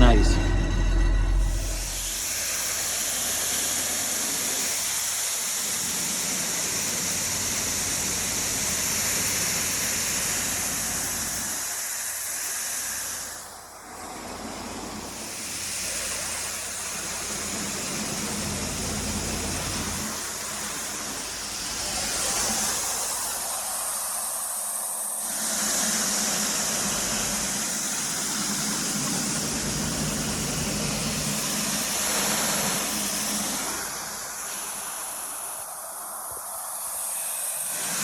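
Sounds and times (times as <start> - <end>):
strong steady hiss: 0.0 - 38.0.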